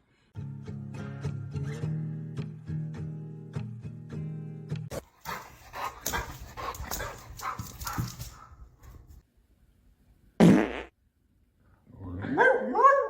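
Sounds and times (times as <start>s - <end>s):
dog barking and whining: 12.2s - 13.0s.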